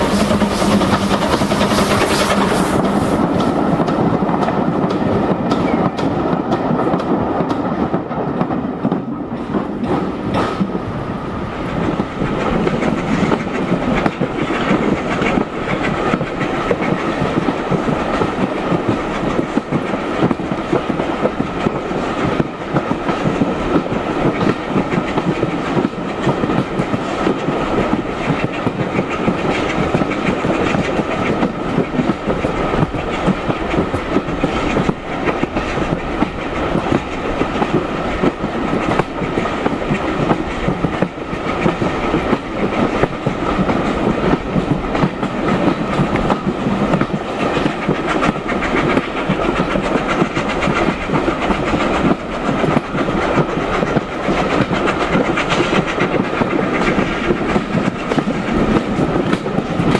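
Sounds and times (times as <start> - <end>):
clickety-clack over rail joints: 0.0 - 59.9
train wheels on rails: 0.0 - 59.9.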